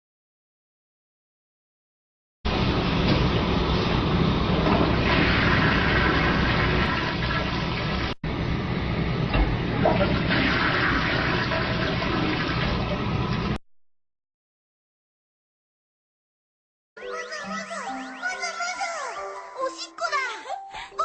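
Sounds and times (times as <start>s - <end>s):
toilet flushing: 2.5s - 13.6s.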